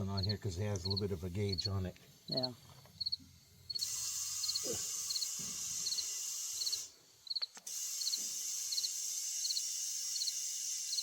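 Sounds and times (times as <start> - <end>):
steady high hiss: 0.0 - 11.0
cricket chirping: 3.0 - 11.0.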